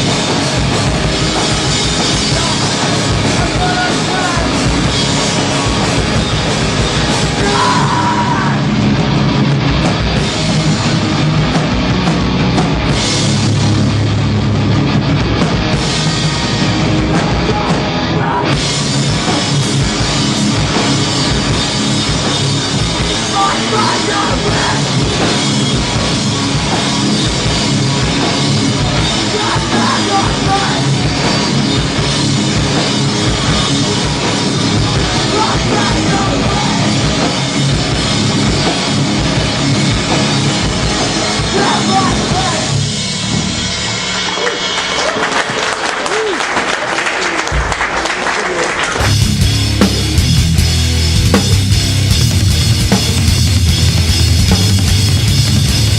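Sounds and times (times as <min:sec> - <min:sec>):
bass guitar: 0:00.0 - 0:45.5, 0:48.9 - 0:55.9
pounding drum kit: 0:00.0 - 0:45.6, 0:49.0 - 0:55.9
loud guitars: 0:00.0 - 0:55.9.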